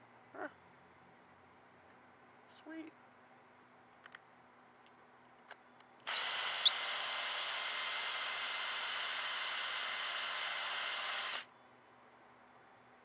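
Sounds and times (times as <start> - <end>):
electric drill whirring: 6.1 - 11.5.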